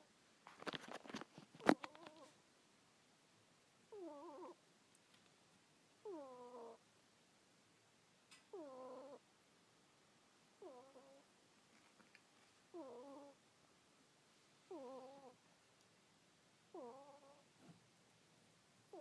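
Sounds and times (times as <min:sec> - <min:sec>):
ferret snoring: 0:03.9 - 0:04.6, 0:06.0 - 0:06.8, 0:08.5 - 0:09.2, 0:10.6 - 0:11.3, 0:12.7 - 0:13.4, 0:14.7 - 0:15.4, 0:16.7 - 0:17.5.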